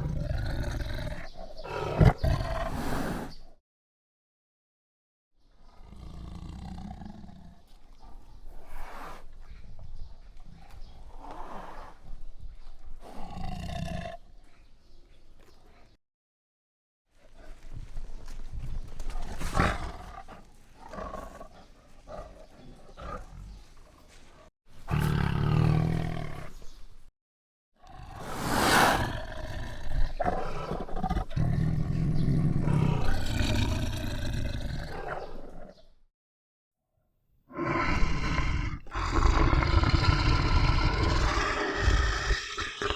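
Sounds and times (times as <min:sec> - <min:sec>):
tiger growling and roaring: 0:00.0 - 0:03.4, 0:05.6 - 0:12.2, 0:13.0 - 0:14.3, 0:19.0 - 0:26.8, 0:27.8 - 0:35.9, 0:37.5 - 0:42.9.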